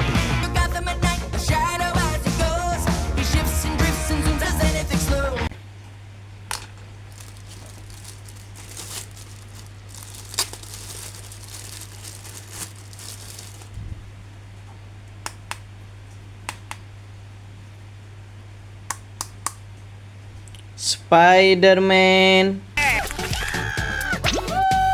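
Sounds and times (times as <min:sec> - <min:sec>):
steady low hum: 0:05.5 - 0:22.8
plastic packaging crinkling: 0:06.5 - 0:14.2.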